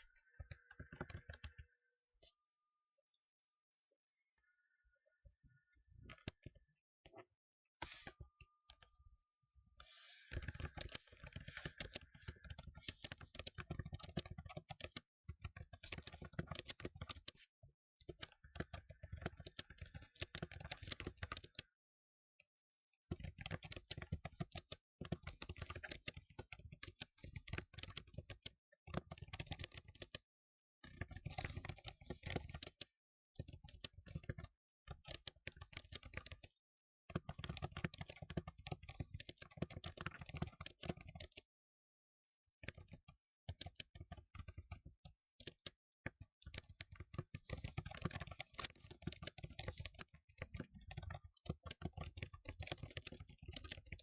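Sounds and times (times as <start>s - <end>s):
fast typing on keyboard: 0.0s - 1.6s, 10.3s - 21.7s, 23.1s - 30.2s, 30.8s - 41.5s, 42.6s - 54.0s.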